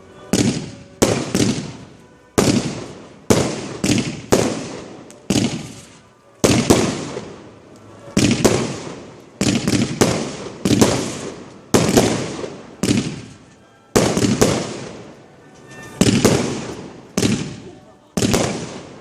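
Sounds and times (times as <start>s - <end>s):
fireworks bangs echoing: 0.0s - 19.0s.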